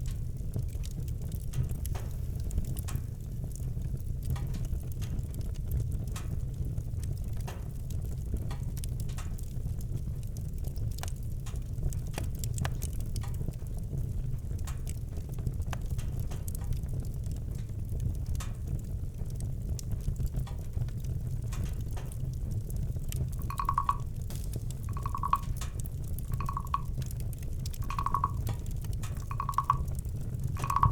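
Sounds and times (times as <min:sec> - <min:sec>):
campfire crackling and popping: 0:00.0 - 0:30.9.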